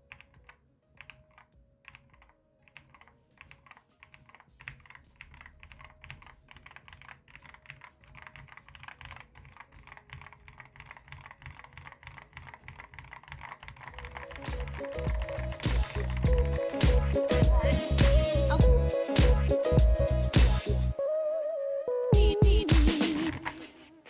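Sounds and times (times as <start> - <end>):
mechanical keyboard typing: 0.0 - 18.2, 23.0 - 23.8.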